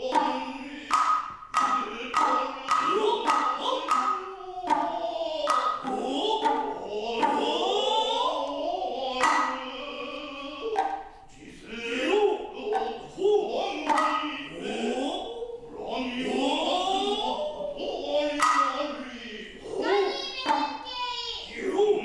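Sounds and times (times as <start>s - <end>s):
sliding vocal calls and chanting: 0.0s - 22.0s
sharp drum strikes: 0.1s - 7.4s, 10.8s - 11.2s.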